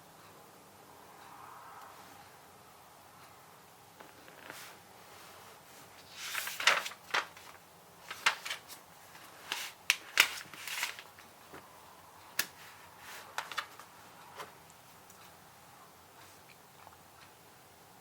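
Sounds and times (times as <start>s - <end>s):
rustling of handled things: 4.0s - 11.8s, 12.4s - 15.4s.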